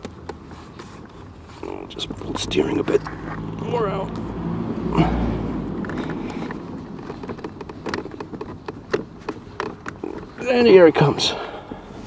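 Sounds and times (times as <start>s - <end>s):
low rumble: 1.8s - 8.2s
plastic and metal clicks and knocks: 5.8s - 10.4s.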